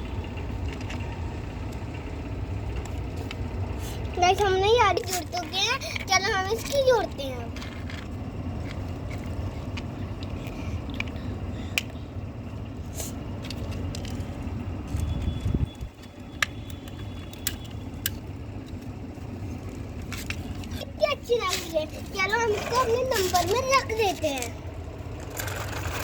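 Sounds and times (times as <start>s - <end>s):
steady low rumble: 0.0s - 26.0s
plastic toy wheels clicking: 13.4s - 18.9s, 25.2s - 26.0s.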